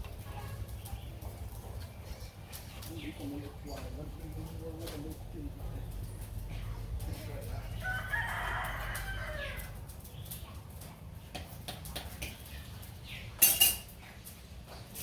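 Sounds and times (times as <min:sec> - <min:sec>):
rooster crowing: 0:07.8 - 0:09.8.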